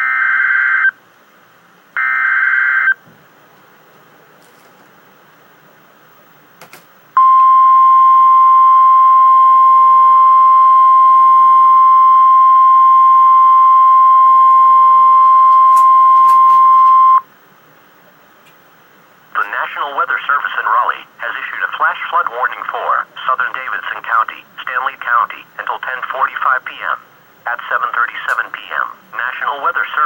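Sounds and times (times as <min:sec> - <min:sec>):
loud high alarm tone: 0:07.2 - 0:17.3.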